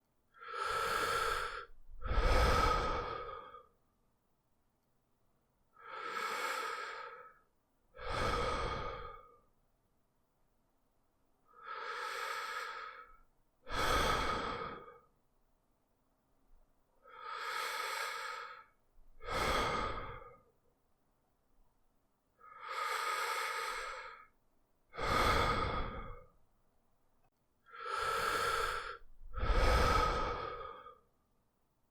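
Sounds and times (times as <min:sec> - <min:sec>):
person breathing through the mouth: 0:00.4 - 0:03.8, 0:05.8 - 0:07.4, 0:08.0 - 0:09.4, 0:11.5 - 0:15.1, 0:17.0 - 0:20.5, 0:22.4 - 0:24.3, 0:24.9 - 0:26.4, 0:27.7 - 0:31.1.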